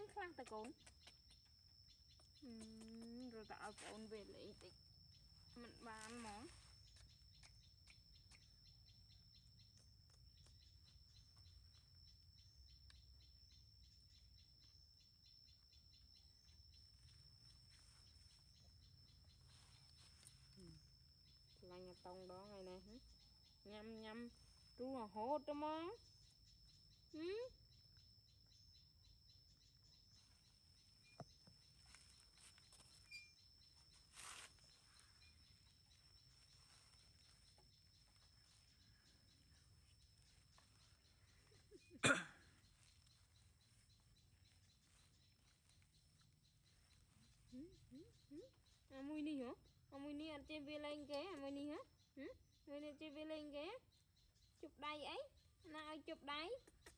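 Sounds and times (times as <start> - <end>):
faint quick chirps: 31.9 - 33.4.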